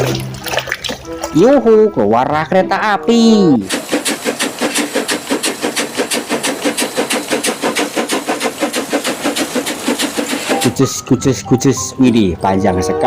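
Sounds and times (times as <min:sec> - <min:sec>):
train chugging: 0:03.6 - 0:11.2.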